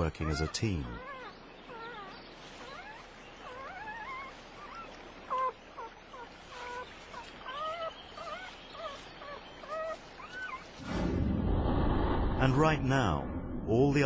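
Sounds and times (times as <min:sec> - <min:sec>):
wolves whining: 0:00.0 - 0:10.8.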